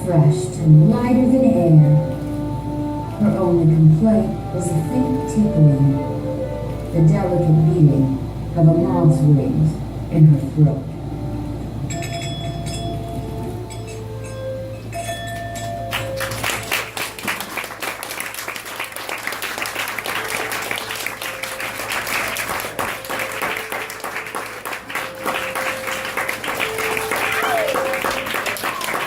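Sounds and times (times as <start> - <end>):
instrumental music with held notes: 0.0 - 29.0
audience applause: 15.9 - 29.0.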